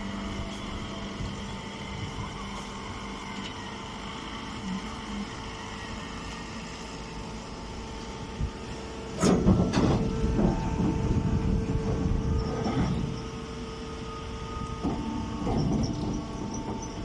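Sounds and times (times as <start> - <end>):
machinery humming: 0.0 - 17.0.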